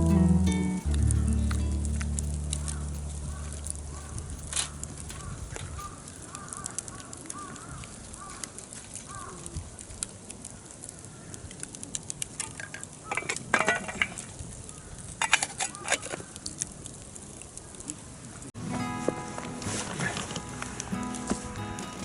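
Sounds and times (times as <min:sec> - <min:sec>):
campfire crackling and popping: 0:00.0 - 0:07.0.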